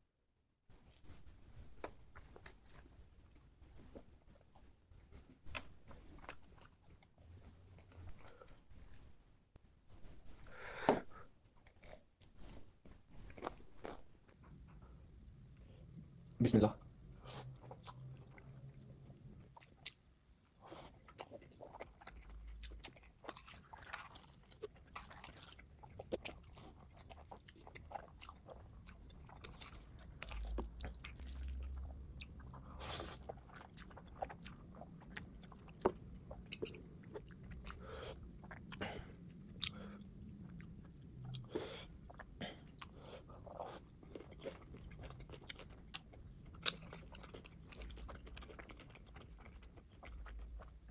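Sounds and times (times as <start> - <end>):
person chewing crunchy food: 13.2 - 14.1, 17.6 - 50.8.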